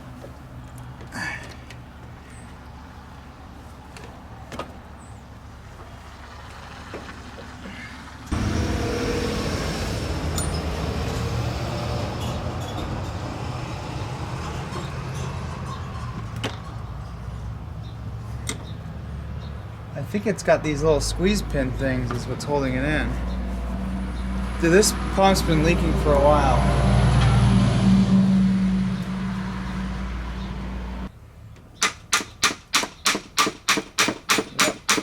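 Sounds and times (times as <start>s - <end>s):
motor running loudly: 8.3s - 10.6s.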